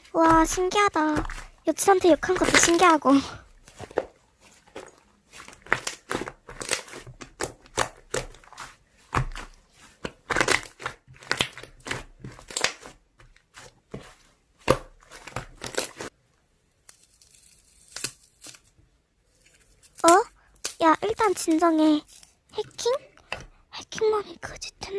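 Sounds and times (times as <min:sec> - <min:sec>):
slime squishing and crackling: 0:00.0 - 0:16.1, 0:19.3 - 0:23.4.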